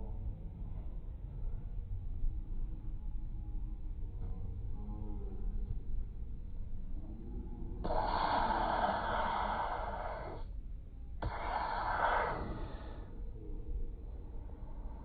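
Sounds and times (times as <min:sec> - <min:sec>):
long breathy hisses: 0:07.8 - 0:10.5, 0:11.2 - 0:13.2.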